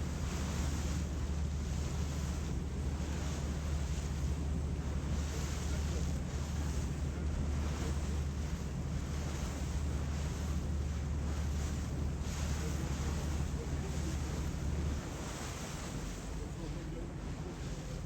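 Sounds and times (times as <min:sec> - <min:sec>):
water washing along hull: 0:00.0 - 0:18.0.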